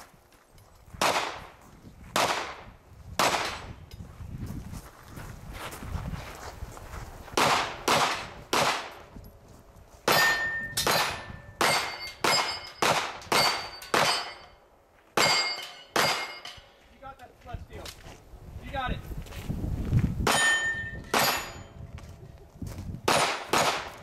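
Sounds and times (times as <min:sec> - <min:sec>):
metallic ring of steel targets: 0:10.1 - 0:14.6, 0:15.2 - 0:16.8, 0:20.3 - 0:21.8.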